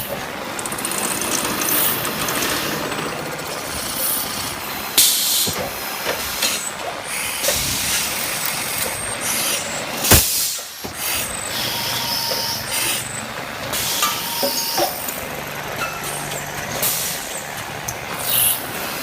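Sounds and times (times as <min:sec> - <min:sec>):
drilling machine running: 0:00.0 - 0:19.0
compressed air hisses: 0:09.2 - 0:11.8.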